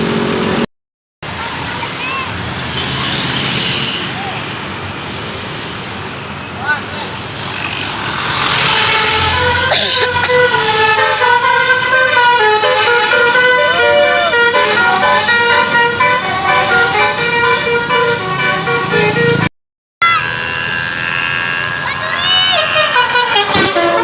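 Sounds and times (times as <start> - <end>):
musical air horn melody: 8.6 - 19.5, 22.5 - 24.0.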